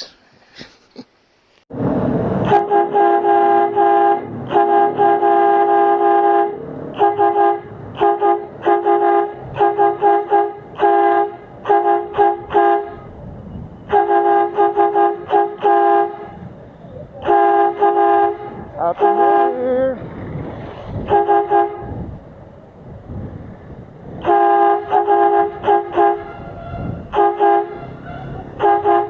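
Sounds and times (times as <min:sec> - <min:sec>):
electric air horn blasts: 0:02.4 - 0:13.1, 0:13.9 - 0:16.4, 0:17.2 - 0:19.7, 0:21.0 - 0:22.0, 0:24.2 - 0:29.0.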